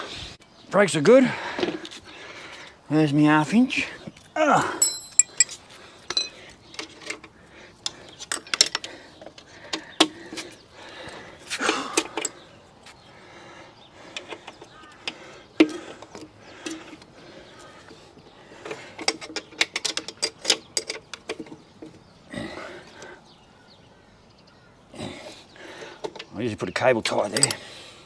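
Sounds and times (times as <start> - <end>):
metallic clinks of hand tools: 4.6 - 7.3, 27.2 - 27.6.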